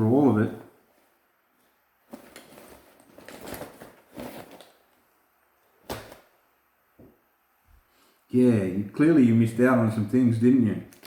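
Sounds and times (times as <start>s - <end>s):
bag rustling: 0.5s - 5.0s.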